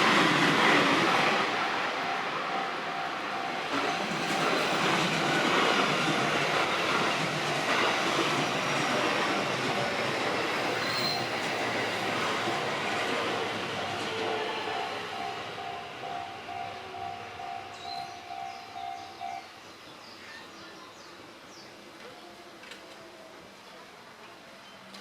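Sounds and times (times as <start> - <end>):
train wheels on rails: 0.0 - 19.4.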